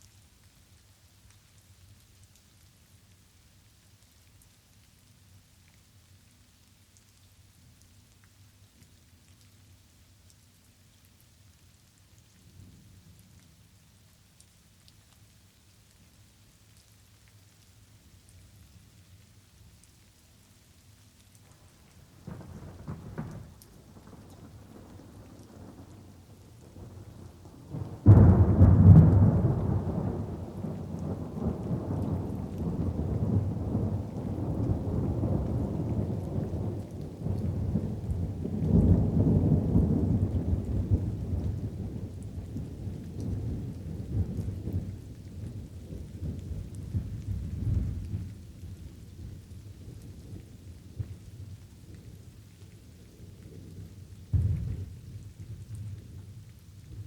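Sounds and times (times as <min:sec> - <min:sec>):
light rain: 0:00.0 - 0:57.0
thunder: 0:22.3 - 0:26.0, 0:26.6 - 0:42.7, 0:46.0 - 0:48.3, 0:54.3 - 0:56.3.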